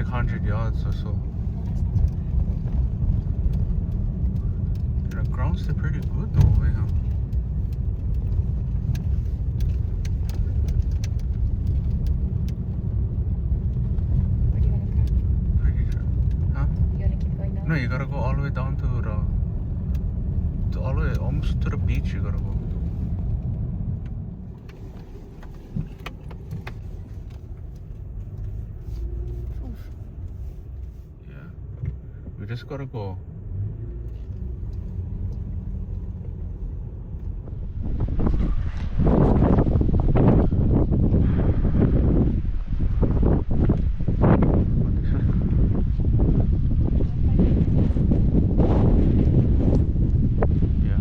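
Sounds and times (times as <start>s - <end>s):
truck engine and tyres rumbling: 0.0s - 51.0s
light clicks and rattles: 0.7s - 17.5s, 19.8s - 31.0s.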